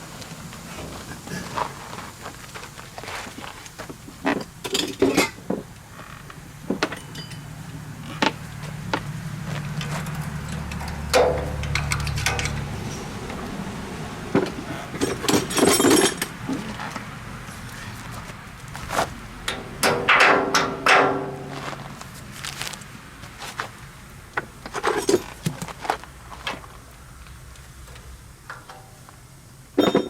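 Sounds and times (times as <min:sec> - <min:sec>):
metallic clinks of tools: 0:06.9 - 0:07.5.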